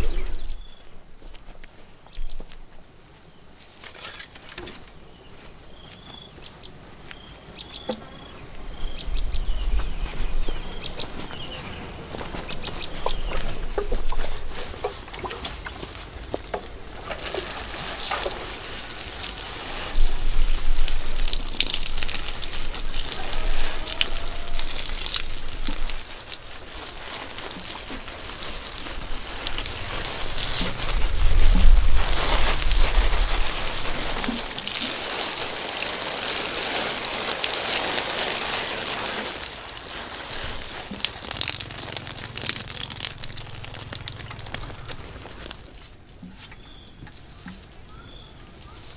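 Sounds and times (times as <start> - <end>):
insects chirping: 0.0 - 48.9
crackling hiss with clicks: 16.4 - 45.7
low rumbles: 28.3 - 34.3.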